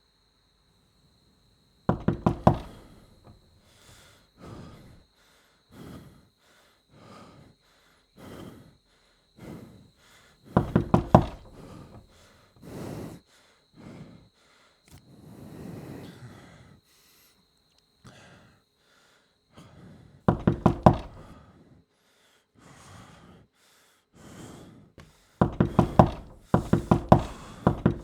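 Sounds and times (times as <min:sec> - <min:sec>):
rapid knocking: 0:01.9 - 0:03.4, 0:10.6 - 0:12.2, 0:20.3 - 0:21.3, 0:25.4 - 0:28.0
slow heavy breaths: 0:01.9 - 0:28.0.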